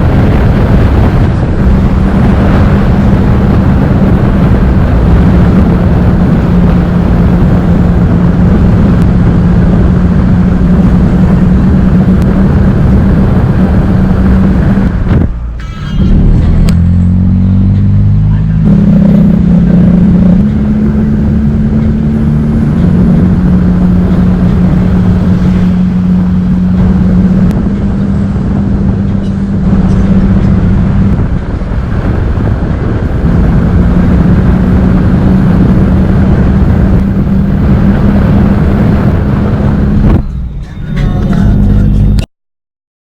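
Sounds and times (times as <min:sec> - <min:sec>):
engine humming: 0:00.0 - 0:42.3
heavy rumbling noise: 0:00.0 - 0:42.3.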